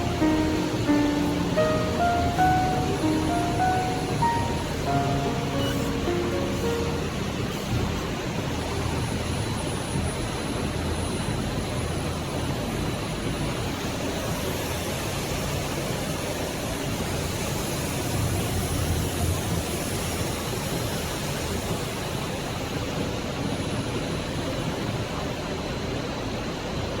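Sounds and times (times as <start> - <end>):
faint thin high tone: 0.0 - 7.4
machinery hiss over low hum: 0.0 - 27.0.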